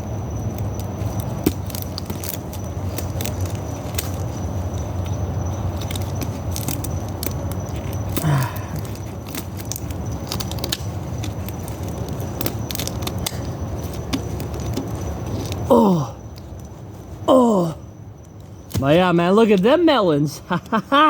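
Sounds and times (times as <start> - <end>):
person grunting: 8.2 - 8.8, 15.7 - 16.2, 17.3 - 17.8.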